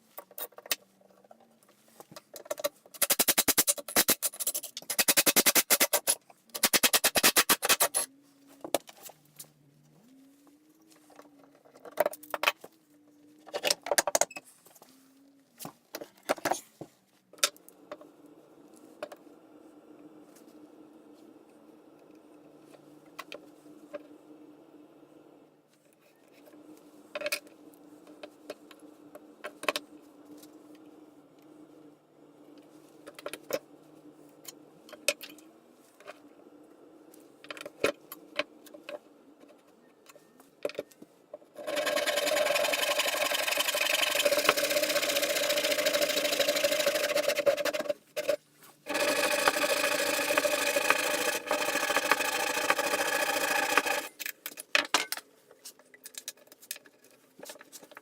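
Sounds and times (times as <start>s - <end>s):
tools and parts clicking: 2.1s - 8.1s, 41.6s - 58.0s
power tool motor running: 41.6s - 47.8s, 48.9s - 54.1s.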